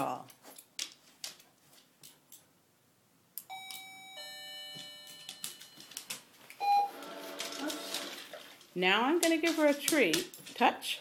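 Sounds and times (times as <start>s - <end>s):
doorbell ding-dong chime: 3.5s - 6.0s.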